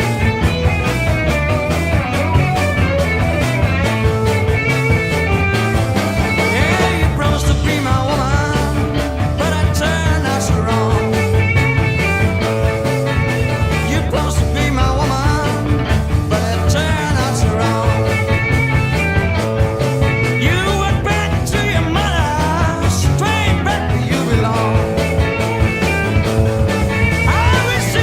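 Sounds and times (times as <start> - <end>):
blues-rock band playing: 0.0 - 28.0.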